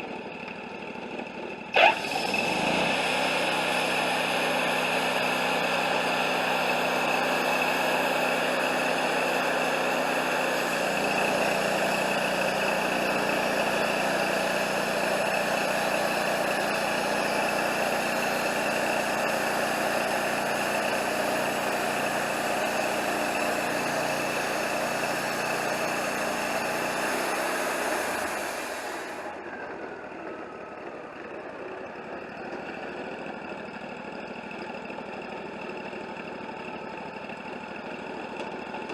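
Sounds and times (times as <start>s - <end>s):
sawmill engine drone: 0.0s - 38.9s
blade winding down tone: 1.6s - 36.2s
saw blade hissing through log: 1.7s - 29.3s.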